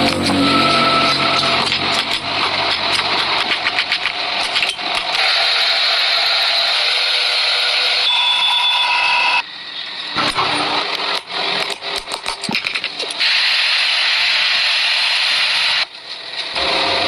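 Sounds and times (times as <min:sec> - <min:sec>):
power tool grinding metal: 0:00.0 - 0:08.2.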